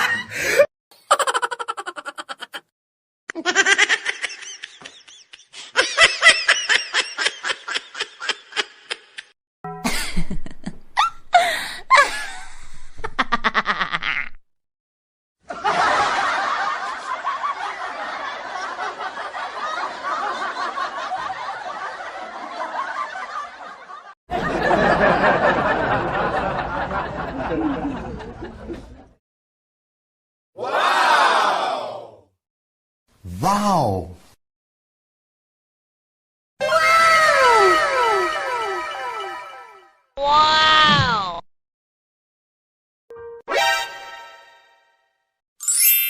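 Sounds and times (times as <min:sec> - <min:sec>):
laughter sound effects: 0:00.0 - 0:02.7, 0:03.3 - 0:14.4, 0:15.5 - 0:29.2.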